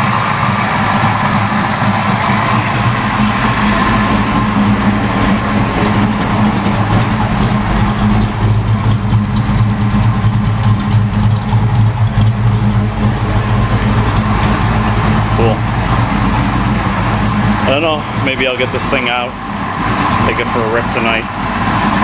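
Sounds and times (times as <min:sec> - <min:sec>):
car engine idling: 0:00.0 - 0:22.0.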